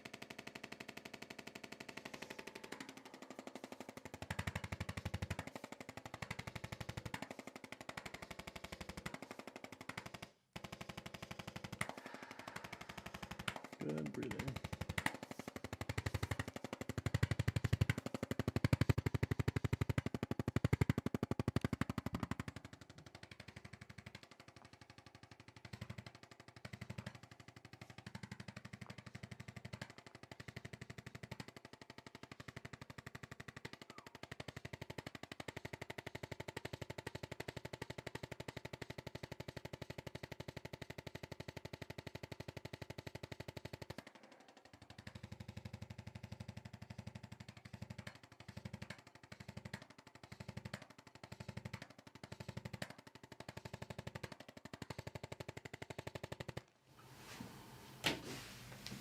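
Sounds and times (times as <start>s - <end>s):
percussion massager pulsing: 0.0s - 59.0s.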